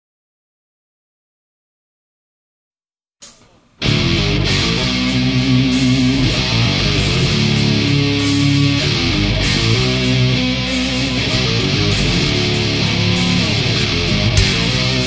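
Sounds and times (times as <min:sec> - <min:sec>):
bass line: 0:03.8 - 0:15.0
electric guitar chords: 0:03.8 - 0:15.0.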